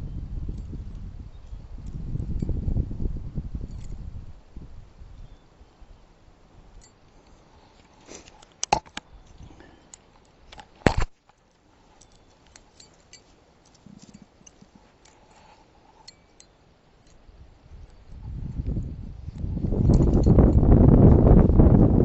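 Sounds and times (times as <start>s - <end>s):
small metallic clinks and clicks: 3.6s - 4.0s, 6.7s - 21.1s.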